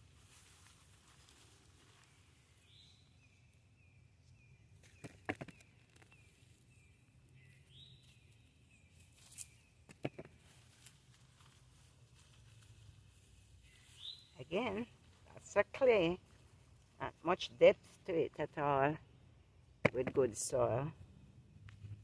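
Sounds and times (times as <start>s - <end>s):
bird chirping: 2.0s - 10.2s, 13.6s - 14.8s.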